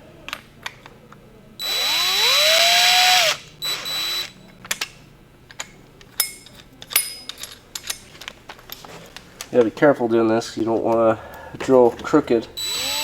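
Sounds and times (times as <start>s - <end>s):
power drill whining: 1.6s - 4.4s, 12.6s - 13.0s.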